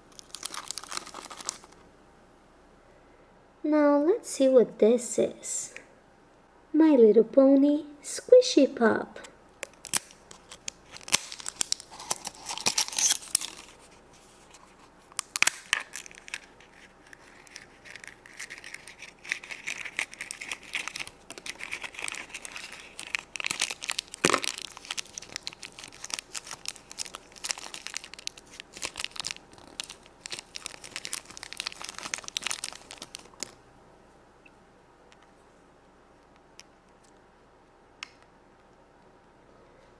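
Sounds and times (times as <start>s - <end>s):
packaging crinkling and tearing: 0.0s - 1.8s, 9.6s - 33.6s.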